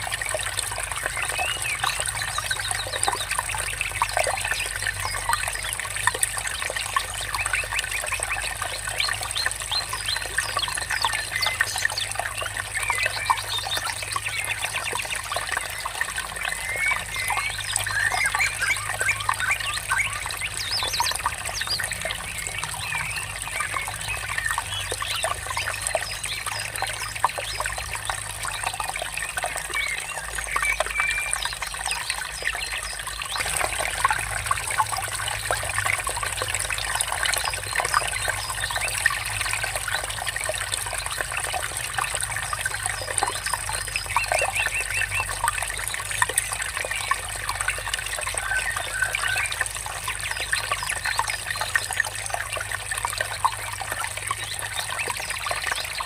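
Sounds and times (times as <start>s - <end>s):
water trickling over stones: 0.0s - 56.0s.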